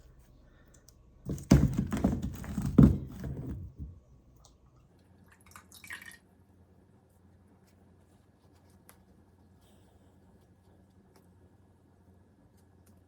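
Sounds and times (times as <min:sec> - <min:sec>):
rock being handled and knocked: 0:01.3 - 0:04.0.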